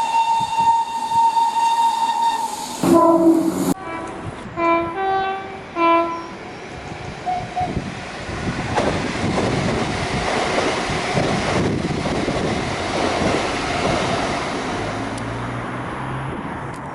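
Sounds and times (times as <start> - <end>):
train horn echo: 0.1 - 6.4
train cars rushing past: 2.5 - 16.6
wind buffeting microphone: 6.7 - 14.6.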